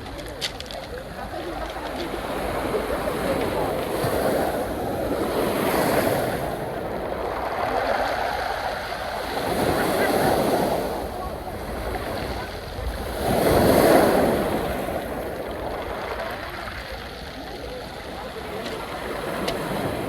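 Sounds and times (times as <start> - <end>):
waves breaking on pebble shore: 0.0 - 20.0.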